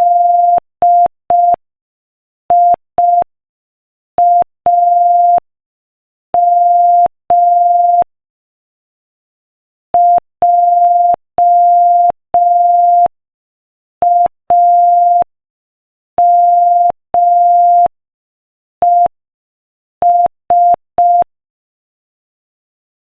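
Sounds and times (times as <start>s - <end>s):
morse code beeps: 16.2s - 17.9s, 18.8s - 19.1s, 20.0s - 21.3s.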